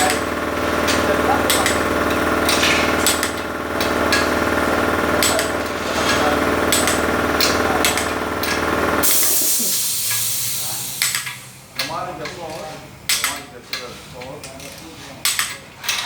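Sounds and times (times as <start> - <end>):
sharp metallic clicks and taps: 0.0 - 9.1, 11.0 - 13.5
mechanical hum: 0.0 - 16.0.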